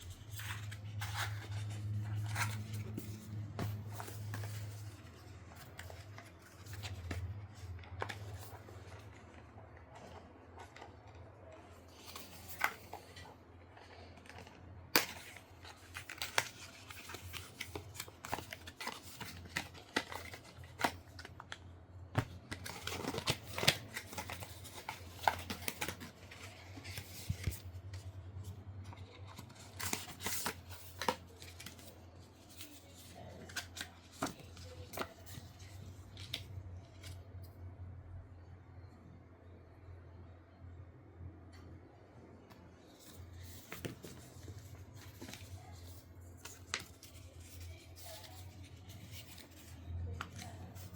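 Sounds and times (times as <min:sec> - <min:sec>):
cardboard and plastic rustling: 0:00.0 - 0:37.2, 0:42.8 - 0:50.9
faint low hum: 0:00.0 - 0:50.9.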